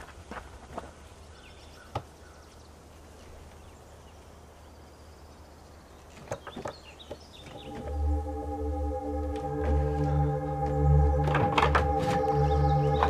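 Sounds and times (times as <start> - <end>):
steady low hum: 7.4 - 13.0.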